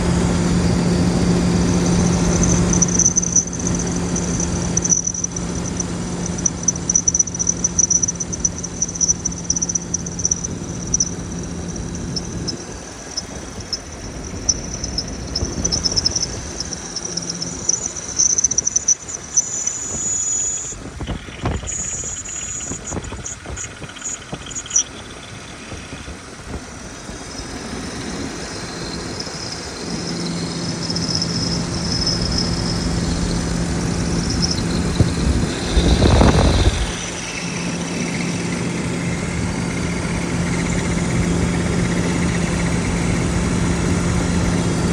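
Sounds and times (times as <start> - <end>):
car engine running: 0.0 - 44.9
high-pitched squeak and whistle: 0.6 - 25.0, 28.6 - 38.7.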